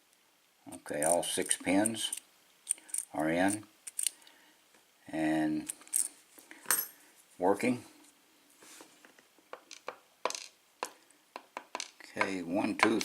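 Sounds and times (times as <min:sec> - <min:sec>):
small metal parts clicking: 0:01.8 - 0:04.3, 0:05.6 - 0:06.1.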